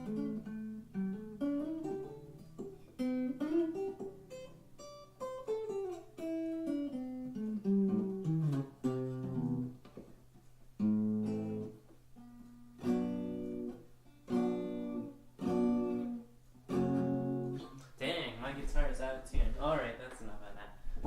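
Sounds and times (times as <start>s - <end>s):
acoustic guitar picked notes: 0.0s - 19.5s
acoustic guitar strummed chords: 10.8s - 19.0s
person speaking: 17.8s - 21.0s.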